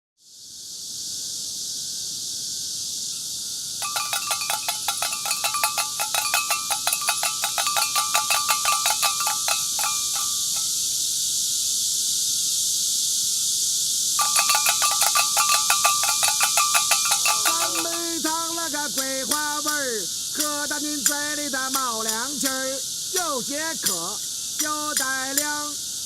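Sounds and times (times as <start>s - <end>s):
steady high hiss: 0.2s - 26.0s
brass bowls clinking: 3.8s - 10.8s, 14.2s - 18.3s.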